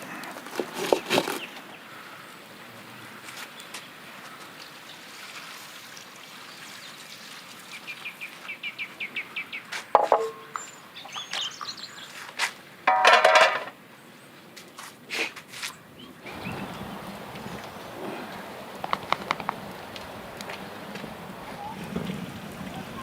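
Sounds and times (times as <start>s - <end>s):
birds chirping and whistling: 7.8s - 12.2s, 16.0s - 17.9s.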